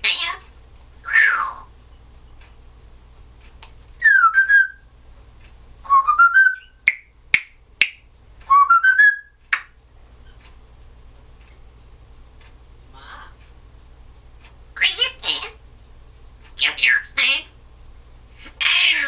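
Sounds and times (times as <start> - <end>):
parrot whistling: 4.0 - 4.9, 5.8 - 7.1, 8.5 - 9.4.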